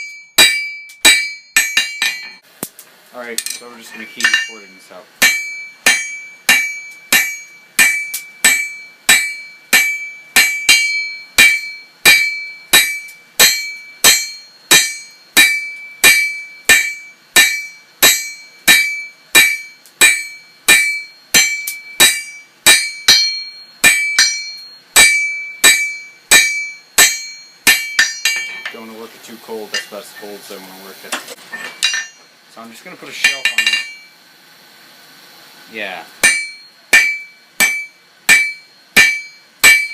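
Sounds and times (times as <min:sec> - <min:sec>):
hammer striking hot steel on anvil: 0:00.0 - 0:28.9, 0:29.7 - 0:30.4, 0:31.1 - 0:32.3, 0:33.1 - 0:34.1, 0:36.2 - 0:39.9.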